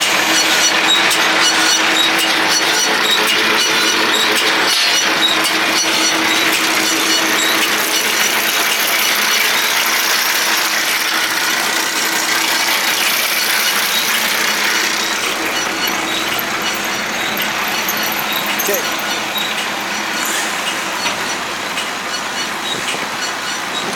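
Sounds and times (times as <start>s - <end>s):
baler clattering and humming: 0.0s - 23.9s.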